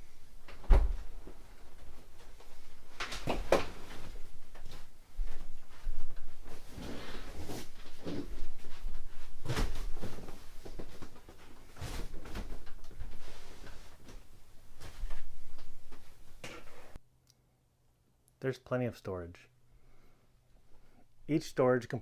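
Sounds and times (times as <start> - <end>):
sofa bed knocking and thumping: 0.5 - 6.8, 7.5 - 16.2
rustling scrape: 6.4 - 17.0.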